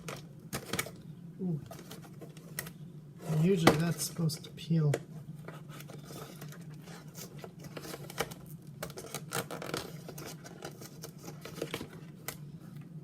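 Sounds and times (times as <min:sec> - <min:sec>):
plastic film crinkling: 0:05.6 - 0:12.5.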